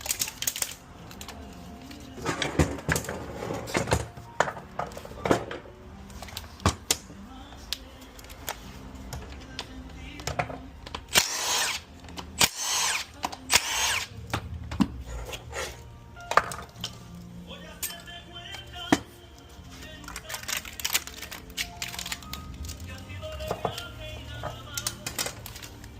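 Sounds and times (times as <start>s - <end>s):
power tool bursts: 11.1s - 14.2s.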